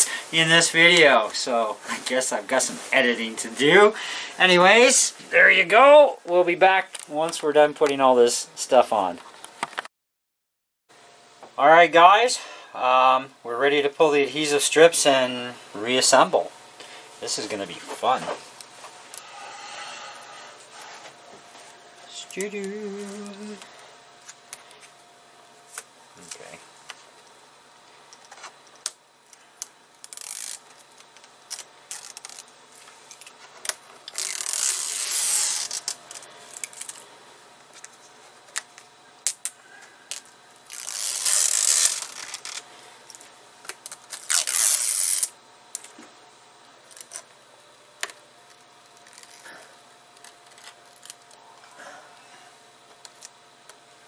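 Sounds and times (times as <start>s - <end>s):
small clicks and handling noises: 28.1s - 37.0s, 50.1s - 51.4s
adhesive strips peeling: 30.0s - 32.5s, 33.1s - 37.0s, 39.2s - 42.6s, 43.7s - 45.3s, 46.9s - 47.3s, 49.0s - 49.6s.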